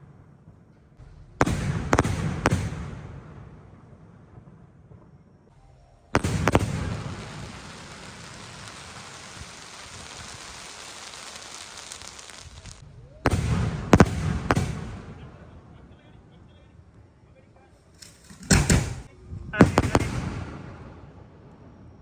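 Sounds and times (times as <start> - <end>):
fireworks sharp bangs: 0.0 - 15.8, 18.0 - 21.3
fireworks hissing crackle: 5.6 - 15.2, 17.8 - 19.1.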